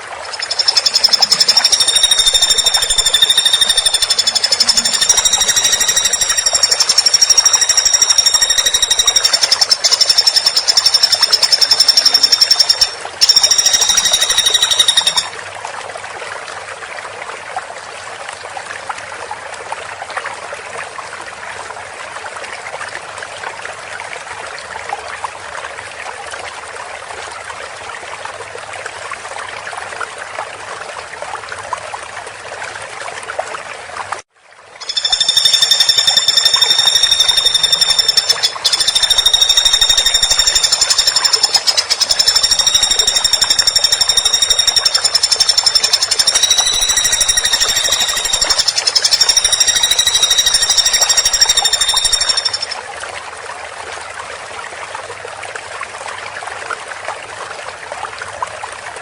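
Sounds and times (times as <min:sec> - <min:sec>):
woodpecker rattling trill: 0:00.0 - 0:15.3, 0:34.8 - 0:52.8
running water rushing: 0:00.0 - 0:15.6.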